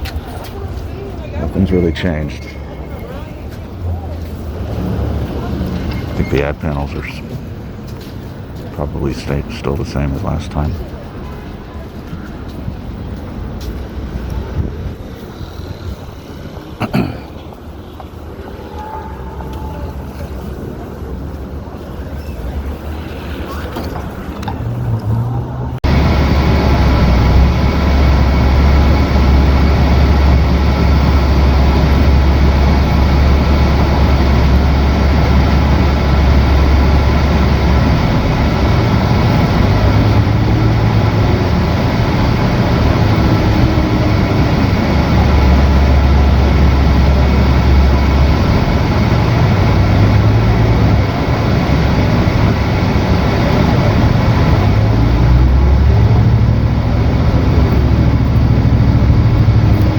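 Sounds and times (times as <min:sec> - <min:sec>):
bus engine drone: 0:00.0 - 0:59.9
road noise: 0:00.0 - 0:59.9
deep low rumble: 0:19.4 - 0:59.9.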